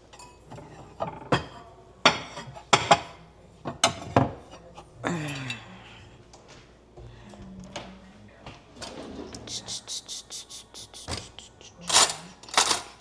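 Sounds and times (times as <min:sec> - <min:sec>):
crockery clinking and knocking: 0:00.2 - 0:04.6
plate scraping: 0:08.8 - 0:13.0.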